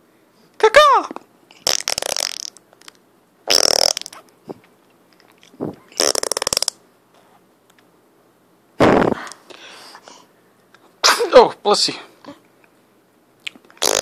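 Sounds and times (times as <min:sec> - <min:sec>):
fart noises: 0:01.5 - 0:02.9, 0:03.5 - 0:04.2, 0:05.6 - 0:06.8, 0:08.8 - 0:09.4, 0:13.8 - 0:14.0.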